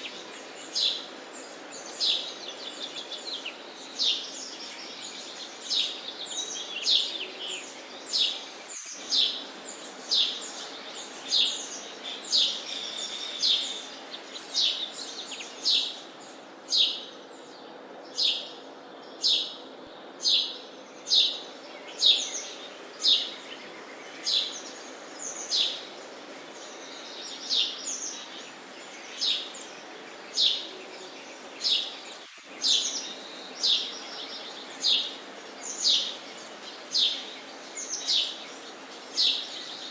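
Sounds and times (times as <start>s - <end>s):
faint background hiss: 0.0s - 39.9s
sparrow chirping: 3.9s - 17.2s, 18.1s - 19.6s, 20.2s - 25.9s, 26.6s - 36.2s, 36.8s - 38.4s.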